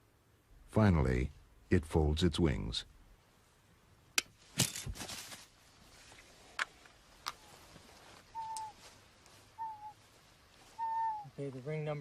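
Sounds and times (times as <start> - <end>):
bird call: 8.3 - 8.8, 9.5 - 10.0, 10.7 - 11.4.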